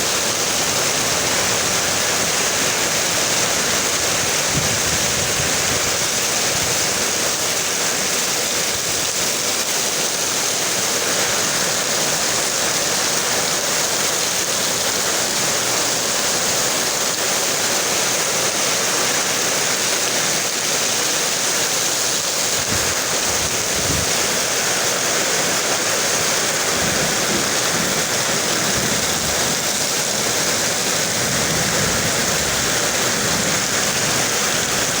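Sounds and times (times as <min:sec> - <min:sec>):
heavy rain pouring: 0:00.0 - 0:35.0.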